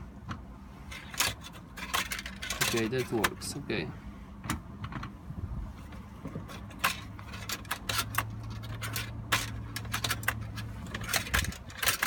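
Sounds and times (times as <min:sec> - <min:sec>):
hands clicking and scraping plastic parts: 0:00.2 - 0:03.6, 0:05.9 - 0:12.0.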